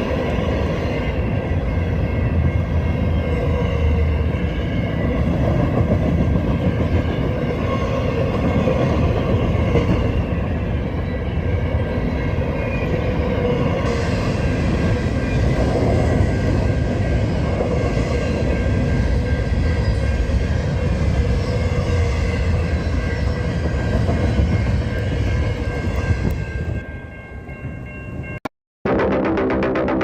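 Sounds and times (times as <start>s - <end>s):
train rolling on rails: 0.0s - 28.4s.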